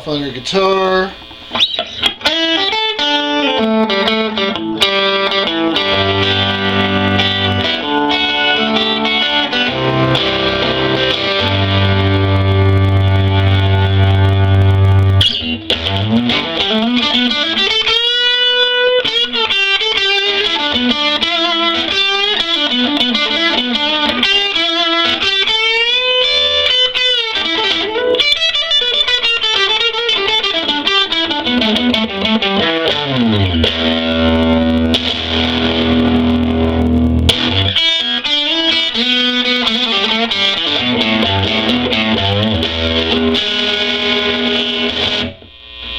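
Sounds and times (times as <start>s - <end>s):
electric guitar lead lines: 0.0s - 45.9s
sustained low guitar chord: 5.9s - 16.5s.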